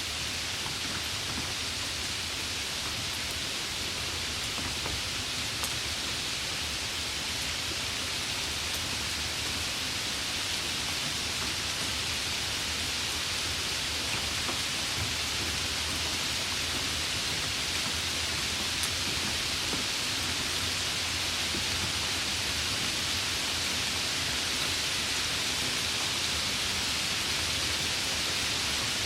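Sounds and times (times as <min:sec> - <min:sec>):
light rain falling: 0:00.0 - 0:29.0
faint raindrop ticks: 0:05.6 - 0:05.9, 0:14.0 - 0:20.4.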